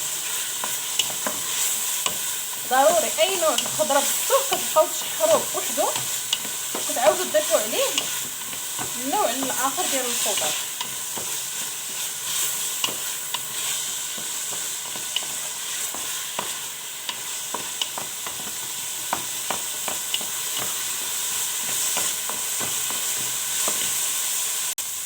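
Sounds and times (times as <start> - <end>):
vegetables sizzling in oil: 0.0 - 25.0
utensil clicking against pot: 0.6 - 12.0, 12.7 - 21.0.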